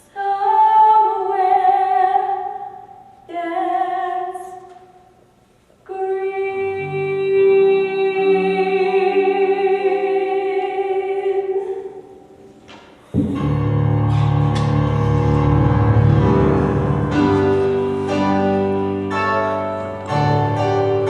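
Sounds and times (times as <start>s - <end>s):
full chord with deep bass: 13.2s - 21.0s
sustained orchestral chord: 13.3s - 21.0s.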